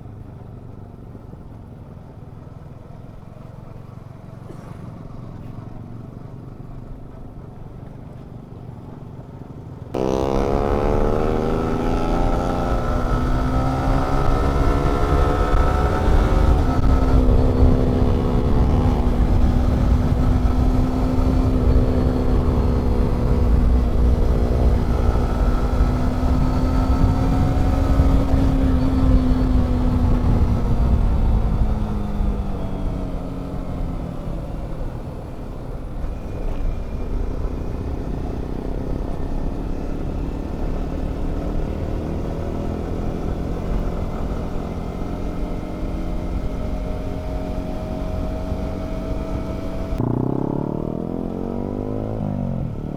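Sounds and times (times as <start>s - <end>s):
motorcycle engine running: 0.0s - 52.9s
wind on microphone: 10.0s - 50.2s.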